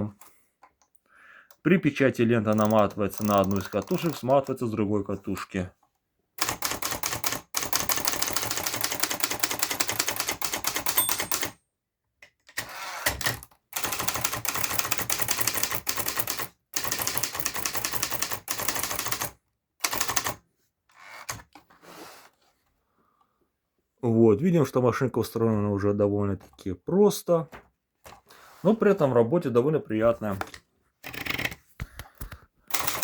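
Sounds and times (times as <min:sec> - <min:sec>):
typewriter keystrokes: 0:02.5 - 0:04.6, 0:06.4 - 0:11.6, 0:12.6 - 0:20.4, 0:32.2 - 0:33.0.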